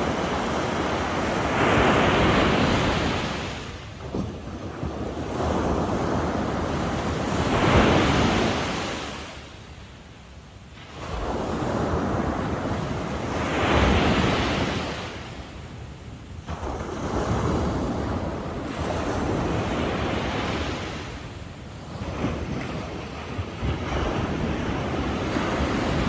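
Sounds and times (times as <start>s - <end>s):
wind buffeting microphone: 0.0s - 9.2s, 11.0s - 26.0s
sea waves breaking on shore: 0.0s - 9.7s, 10.5s - 15.8s, 16.4s - 26.0s.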